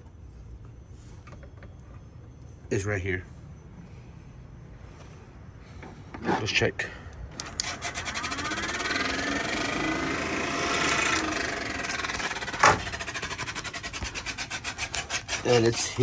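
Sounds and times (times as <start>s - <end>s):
cooling fan whine: 0.0s - 16.0s
fan blades ticking: 7.3s - 16.0s.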